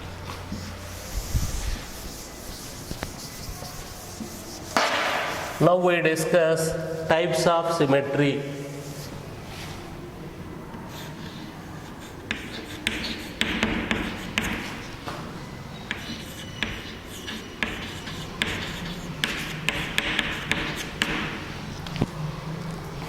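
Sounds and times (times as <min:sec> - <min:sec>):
chalk scratching on board: 0:00.5 - 0:05.6, 0:08.7 - 0:09.2, 0:10.9 - 0:15.0, 0:15.8 - 0:21.5
chalk tapping on board: 0:01.8 - 0:05.6, 0:12.0 - 0:14.8, 0:15.9 - 0:21.4.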